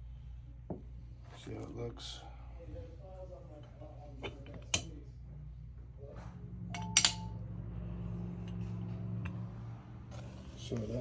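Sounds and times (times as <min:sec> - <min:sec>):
metal parts clicking with a ring: 0:06.7 - 0:07.4
small metal parts clinking: 0:06.8 - 0:07.4.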